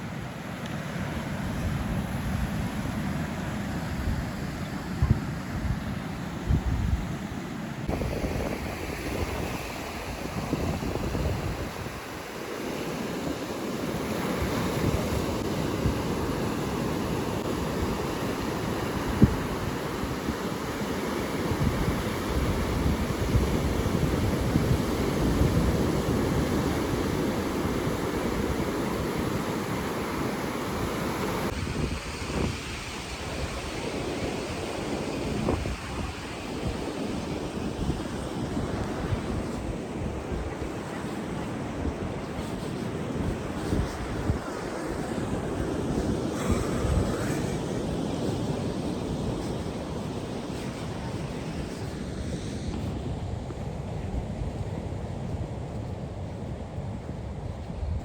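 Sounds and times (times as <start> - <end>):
wind: 0.0 - 58.0
wind buffeting microphone: 1.1 - 58.0
rushing water: 7.8 - 52.7.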